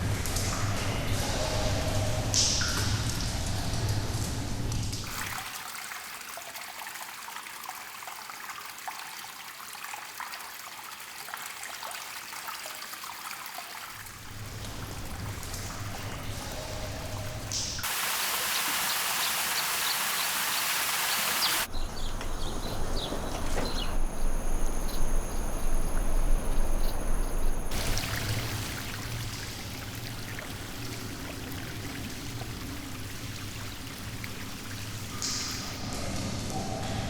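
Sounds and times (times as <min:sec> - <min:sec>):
water drips and splashes: 0:00.0 - 0:21.7, 0:27.7 - 0:36.2
flowing water: 0:05.0 - 0:21.7, 0:27.7 - 0:36.1.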